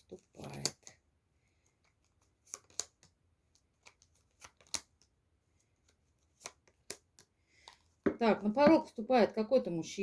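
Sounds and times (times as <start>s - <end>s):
cards snapping and slapping: 2.0s - 5.1s, 6.3s - 7.8s.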